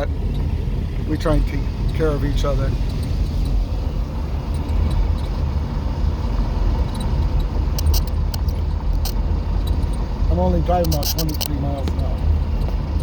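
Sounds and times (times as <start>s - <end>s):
vehicle engine and road rumble: 0.0s - 13.0s
light clicks: 6.9s - 10.0s, 10.8s - 12.8s.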